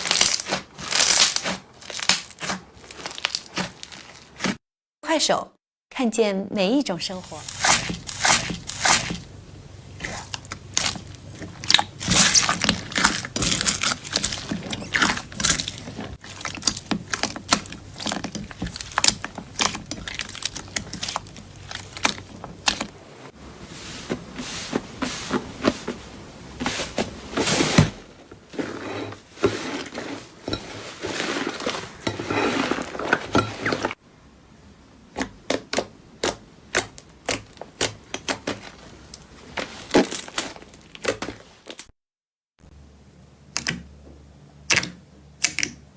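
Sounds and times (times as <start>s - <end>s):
slime crackling and popping: 0.0s - 4.4s, 10.0s - 22.8s.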